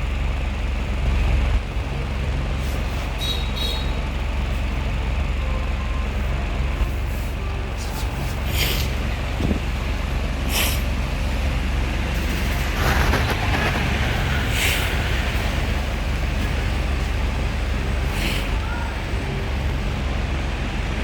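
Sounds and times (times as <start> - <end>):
high fan swishes: 7.1 - 19.8.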